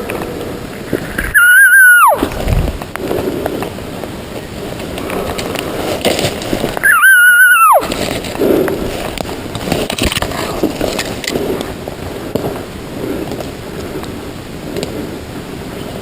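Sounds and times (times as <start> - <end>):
elk bugle whistle: 1.4 - 2.2, 6.8 - 7.9
rustling of brush and twigs: 2.1 - 16.0.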